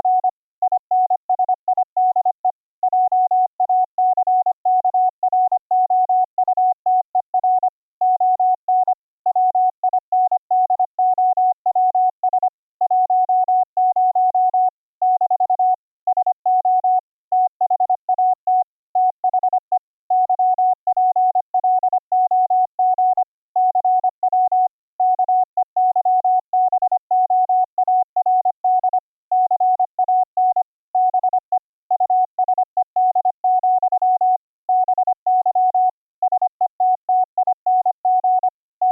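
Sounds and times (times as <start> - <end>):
morse code tone: 36.9 - 38.9.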